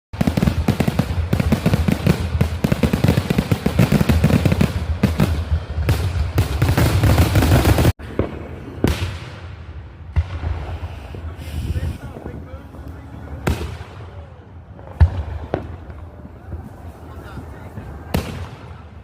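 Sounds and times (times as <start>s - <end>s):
quieter firework pops: 0.2s - 10.8s, 14.8s - 18.9s
fireworks bangs and crackles: 0.2s - 19.0s.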